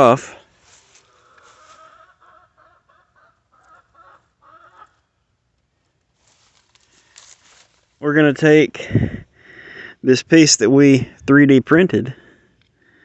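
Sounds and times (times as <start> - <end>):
chickens clucking faintly: 1.0 - 5.5.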